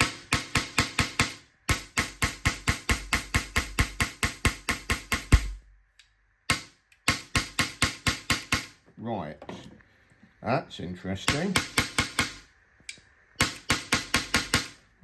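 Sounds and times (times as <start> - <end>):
airsoft rifle rapid shots: 0.0 - 5.6, 6.5 - 8.8, 11.3 - 12.5, 13.4 - 14.8.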